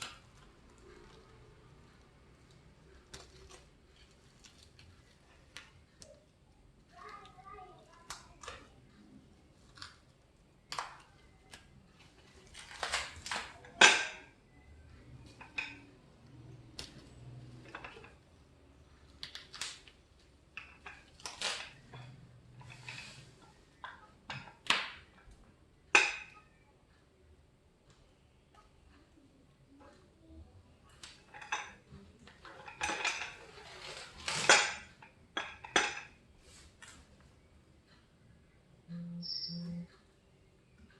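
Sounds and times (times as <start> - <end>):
metal parts clinking and clanking: 32.4 - 36.1.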